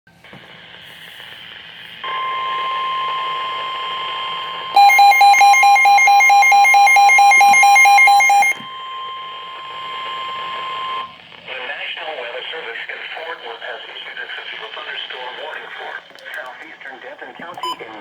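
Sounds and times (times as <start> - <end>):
radio hiss: 0.1 - 4.7, 10.4 - 18.0
steady warning alarm tone: 2.0 - 11.1
rapid electronic alarm beeping: 4.2 - 11.1.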